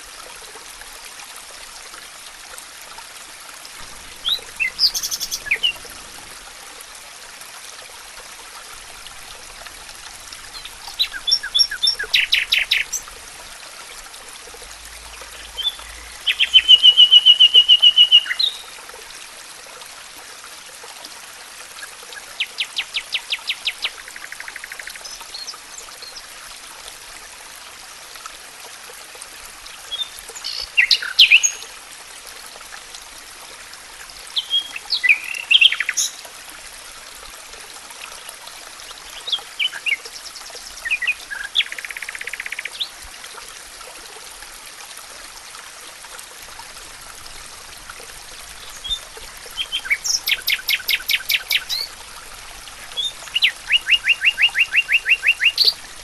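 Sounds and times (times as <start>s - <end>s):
running water: 0.0s - 56.0s
songbirds singing: 4.2s - 5.8s, 10.6s - 13.1s, 15.3s - 18.7s, 29.9s - 31.7s, 34.4s - 36.2s, 48.6s - 51.9s, 53.0s - 55.8s.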